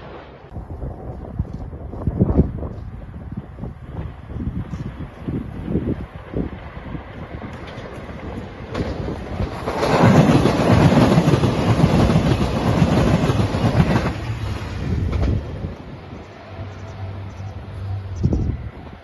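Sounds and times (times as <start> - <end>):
train wheels clattering: 7.5 - 15.7.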